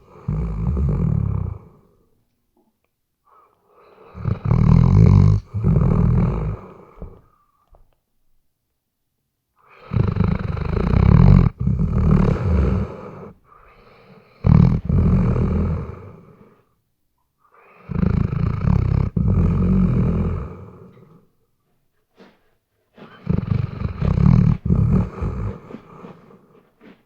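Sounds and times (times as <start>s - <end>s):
dog snoring: 0.0s - 2.0s, 3.3s - 7.4s, 9.6s - 16.6s, 17.5s - 21.3s, 23.0s - 27.0s.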